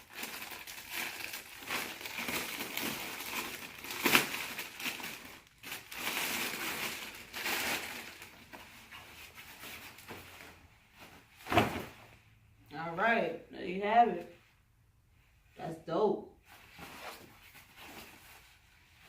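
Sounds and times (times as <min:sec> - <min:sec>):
packaging crinkling and rustling: 0:00.0 - 0:10.6.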